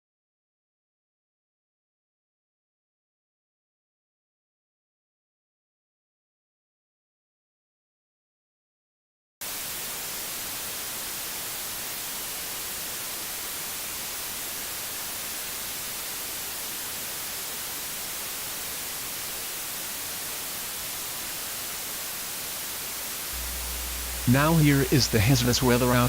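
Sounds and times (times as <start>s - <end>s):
radio static hiss: 9.4s - 26.0s.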